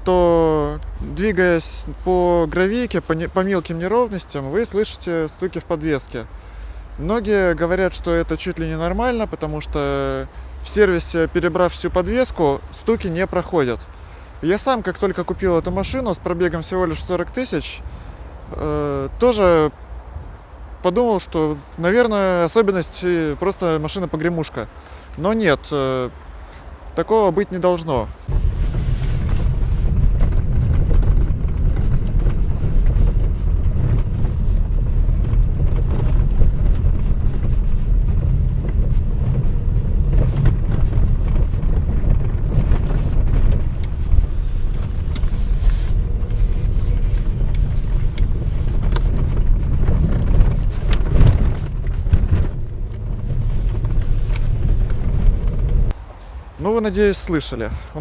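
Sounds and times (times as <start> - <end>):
low road rumble: 0.0 - 58.0
suspension rattling and knocking: 28.3 - 56.0.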